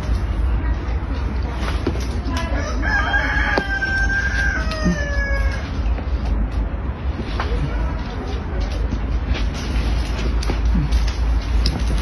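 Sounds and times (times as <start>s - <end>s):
rooster crowing: 2.4s - 5.9s.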